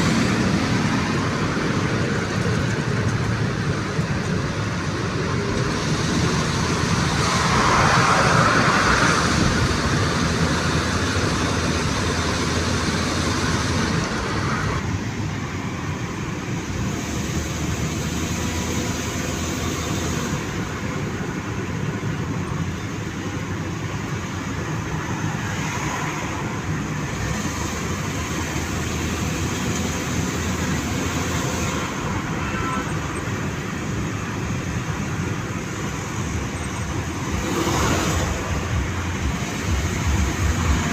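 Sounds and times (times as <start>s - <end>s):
road traffic noise: 0.0s - 40.9s
vehicle passing: 6.0s - 11.6s, 36.3s - 40.9s.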